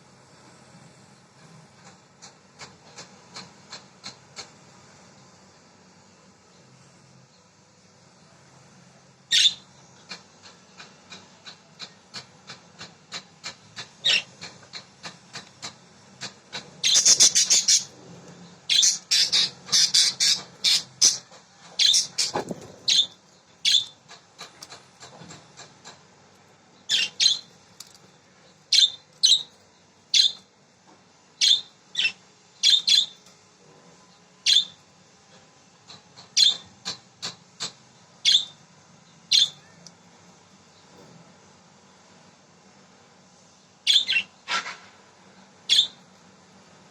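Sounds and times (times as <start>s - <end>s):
budgerigars chirping: 16.8s - 17.9s, 18.7s - 21.2s, 21.8s - 24.0s, 26.9s - 27.5s, 28.7s - 29.5s, 30.1s - 30.4s, 31.4s - 33.2s, 34.5s - 34.8s, 36.4s - 36.6s, 38.3s - 38.6s, 39.3s - 39.6s, 43.9s - 44.3s, 45.7s - 46.0s.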